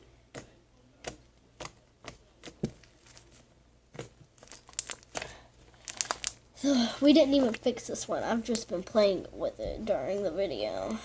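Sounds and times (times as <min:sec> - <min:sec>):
slime squeezed with sticky pops: 0:04.0 - 0:06.4.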